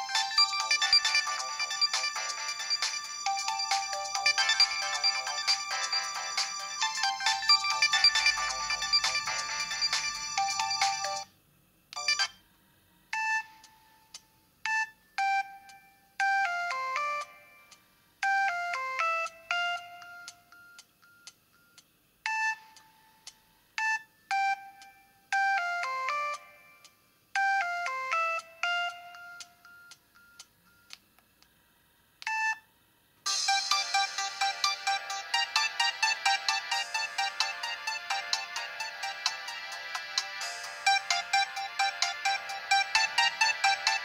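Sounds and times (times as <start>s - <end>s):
electronic phone ringtone: 0.0s - 11.3s, 12.0s - 12.4s, 33.3s - 44.0s.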